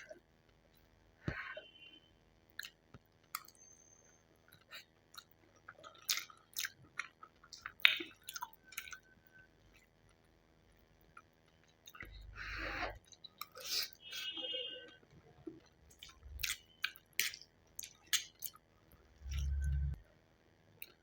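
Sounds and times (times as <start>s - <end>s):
person chewing noodles: 2.5s - 3.6s, 4.4s - 10.2s, 10.8s - 14.2s, 15.4s - 20.0s.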